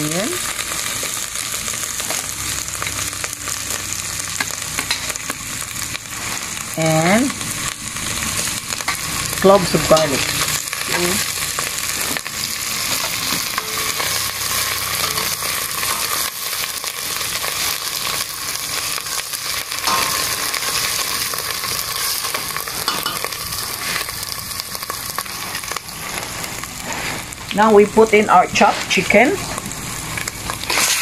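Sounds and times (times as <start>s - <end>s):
food sizzling in hot oil: 0.0s - 31.0s.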